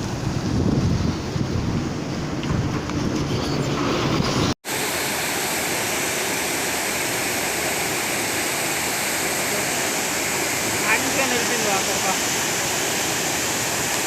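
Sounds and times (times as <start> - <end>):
wind buffeting microphone: 0.0 - 4.6
river water rushing: 4.7 - 14.0.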